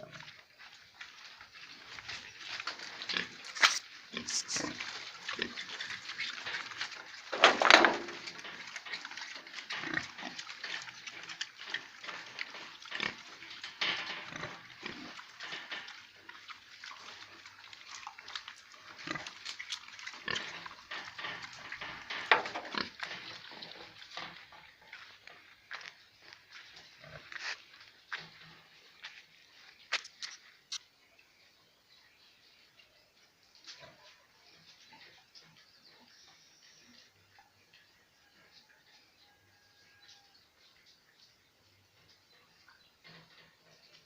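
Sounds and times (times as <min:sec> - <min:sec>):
piglets squealing and grunting: 0:03.0 - 0:07.2.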